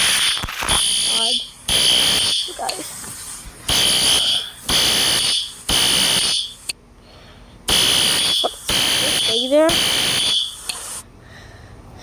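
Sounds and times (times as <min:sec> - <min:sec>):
fire alarm buzzing: 0:00.0 - 0:02.7, 0:03.7 - 0:06.7, 0:07.7 - 0:10.8.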